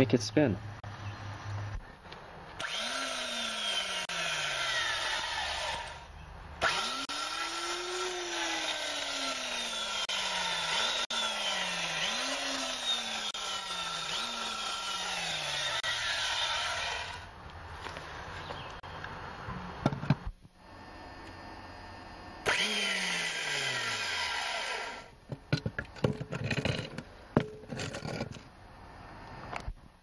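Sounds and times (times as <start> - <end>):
electric chainsaw revving: 2.6 - 17.3, 20.6 - 25.1.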